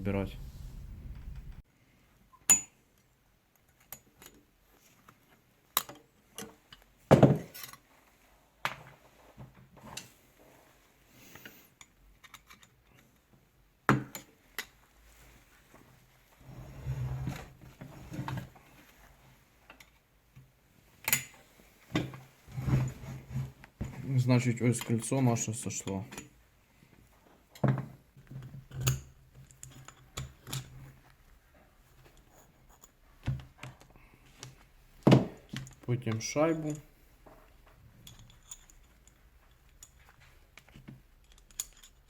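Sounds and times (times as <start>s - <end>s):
rubbing and handling noise: 29.2s - 42.0s
metal tools clinking and knocking: 35.3s - 40.2s, 41.2s - 42.0s.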